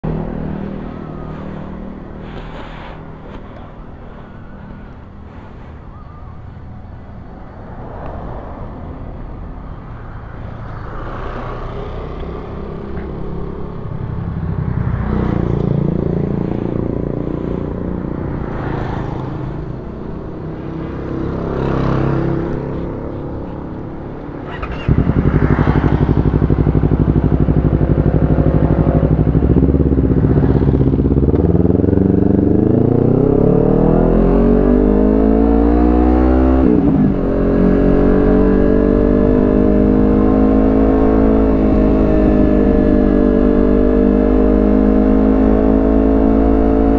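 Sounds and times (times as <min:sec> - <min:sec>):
motorcycle engine revving: 0:24.3 - 0:46.9.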